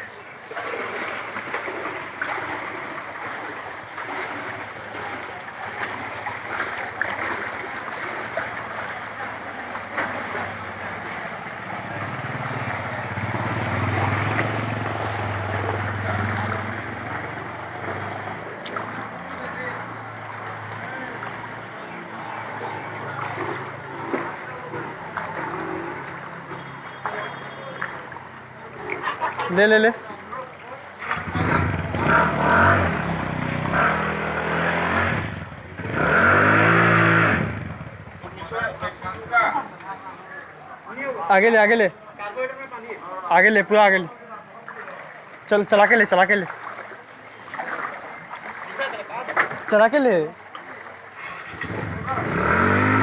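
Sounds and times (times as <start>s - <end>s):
water washing: 0.0s - 41.9s, 42.7s - 53.0s
vehicle engine humming: 7.6s - 28.6s
scooter engine revving: 10.0s - 18.9s, 31.0s - 39.0s, 51.2s - 53.0s.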